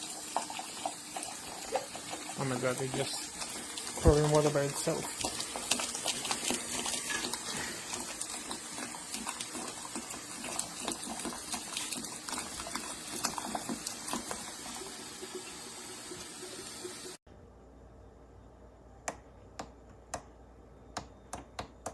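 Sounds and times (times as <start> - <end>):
water stream splashing from urn: 0.0 - 17.2.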